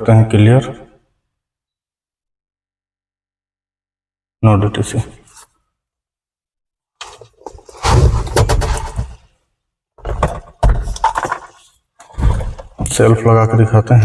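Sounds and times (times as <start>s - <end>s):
handling clicks and knocks: 10.0s - 13.0s.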